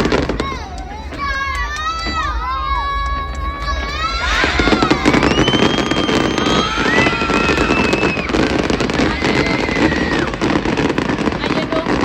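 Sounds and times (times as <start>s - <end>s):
fireworks crackling: 0.0s - 12.0s
high drawn-out whistling tones: 3.6s - 10.2s.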